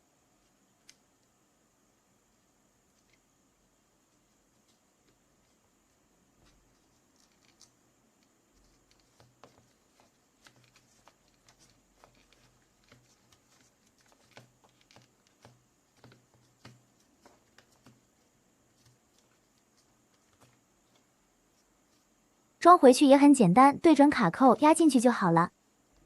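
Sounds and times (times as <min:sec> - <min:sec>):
light rustling of hands: 0:04.0 - 0:22.2.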